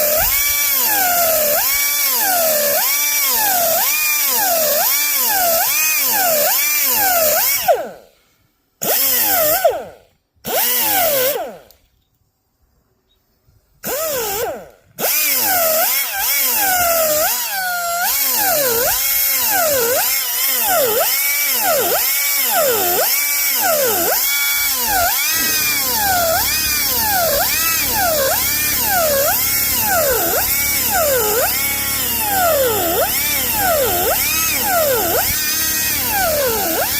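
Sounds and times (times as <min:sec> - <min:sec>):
power tool cutting wood: 0:00.0 - 0:08.1, 0:08.8 - 0:11.8, 0:13.8 - 0:36.9.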